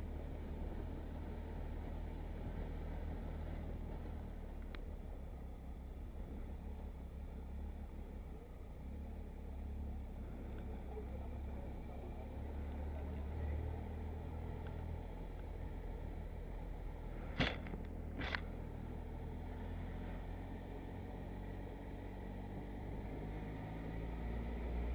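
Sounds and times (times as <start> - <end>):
motorcycle engine rumbling: 0.0 - 24.9.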